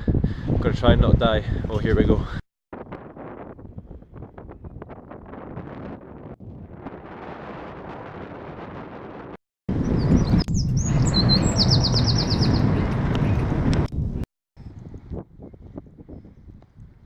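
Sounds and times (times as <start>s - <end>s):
wind noise on microphone: 0.0s - 17.0s
songbird chirping and trilling: 9.8s - 12.9s.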